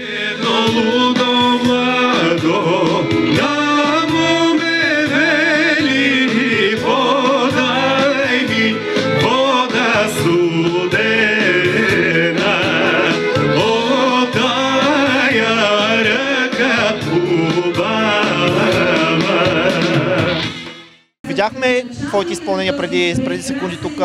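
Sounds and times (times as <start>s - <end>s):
folk song with singer and band: 0.0s - 20.7s, 21.3s - 24.0s.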